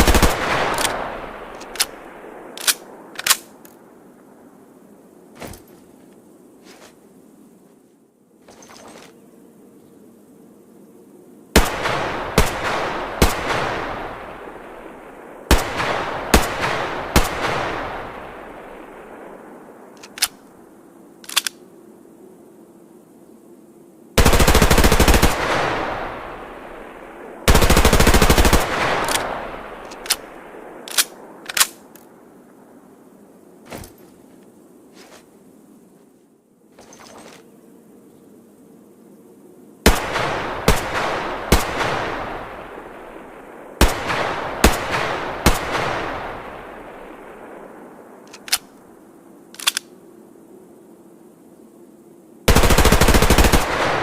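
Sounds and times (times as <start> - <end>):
submachine gun firing: 0.0 - 1.0, 27.5 - 29.3, 52.5 - 54.0.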